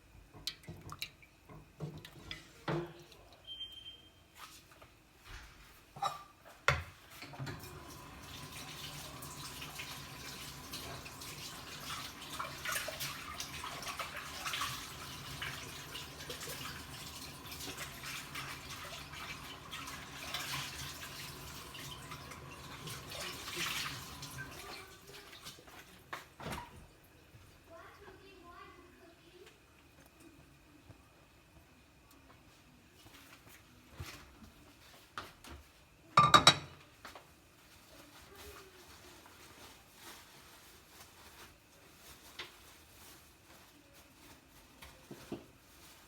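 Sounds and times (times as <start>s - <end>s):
tap water running into sink: 7.3s - 26.8s.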